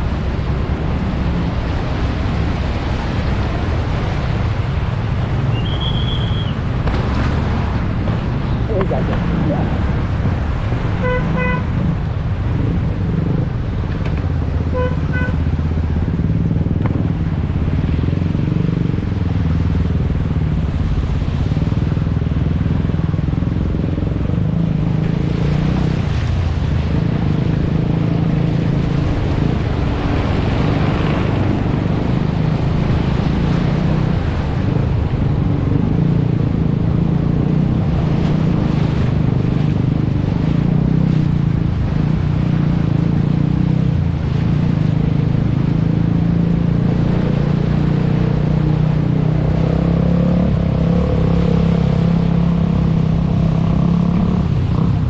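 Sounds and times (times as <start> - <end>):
horn beeps: 5.5 - 6.6.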